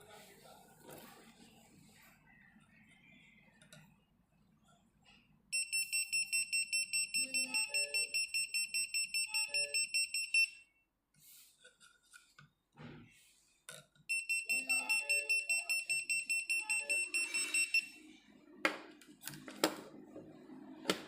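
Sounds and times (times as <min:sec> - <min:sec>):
rapid high-pitched alarm beeping: 0:05.6 - 0:10.5, 0:14.1 - 0:18.0.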